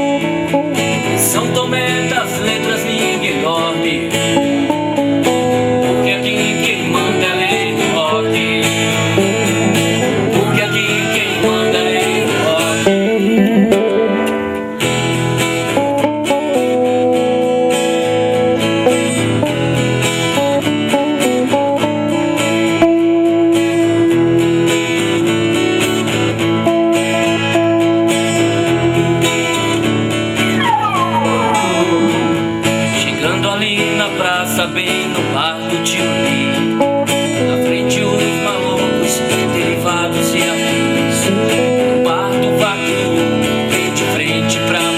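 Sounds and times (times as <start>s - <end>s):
bent guitar notes: 0.0s - 35.4s
held lead guitar note: 8.7s - 24.6s, 26.6s - 33.4s
rock band playing: 8.9s - 33.4s.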